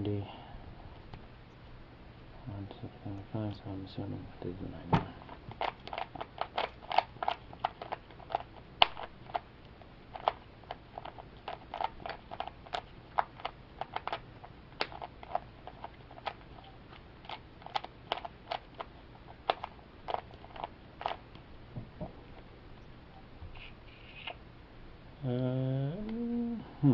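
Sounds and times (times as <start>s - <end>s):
plastic cube layers clicking: 5.5s - 9.4s, 10.1s - 14.2s.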